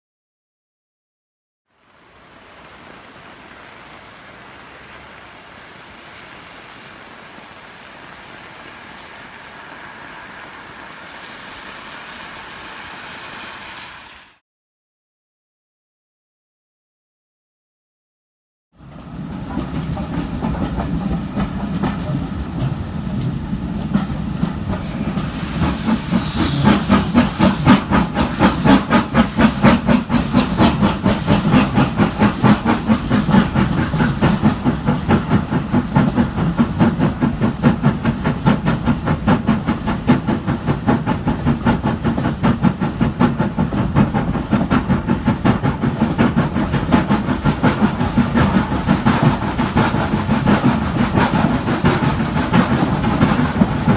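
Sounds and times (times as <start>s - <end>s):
steam hiss: 1.8s - 14.4s, 23.6s - 53.9s
steam locomotive exhaust beats: 1.8s - 14.4s, 18.8s - 53.9s.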